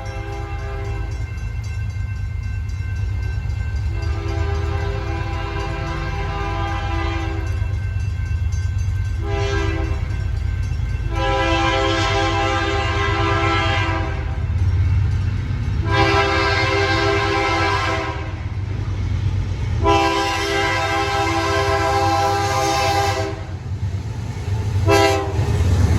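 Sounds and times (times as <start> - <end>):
train rumbling: 0.0 - 25.9
locomotive air horn blasts: 4.0 - 7.5, 9.2 - 10.0, 11.1 - 14.4, 15.8 - 18.4, 19.8 - 23.5, 24.8 - 25.4.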